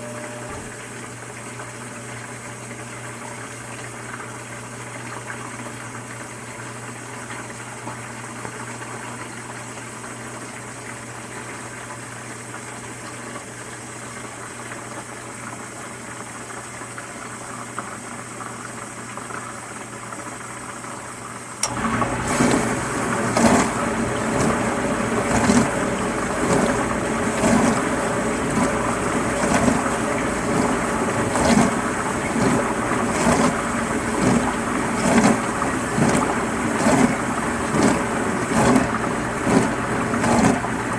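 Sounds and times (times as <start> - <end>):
dishwasher humming: 0.0 - 14.8, 20.6 - 40.9
water spraying and sloshing: 21.6 - 40.9.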